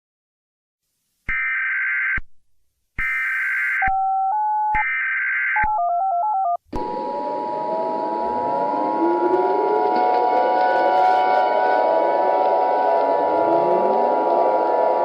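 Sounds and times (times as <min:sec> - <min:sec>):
touch-tone beeps: 0:05.6 - 0:06.6
swooping siren-like sound: 0:06.8 - 0:15.0.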